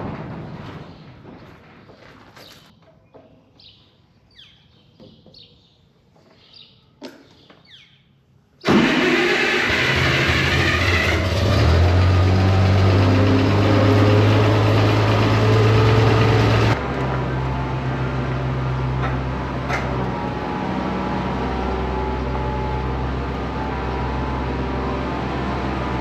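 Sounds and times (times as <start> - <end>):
tractor engine running: 8.6 - 26.0.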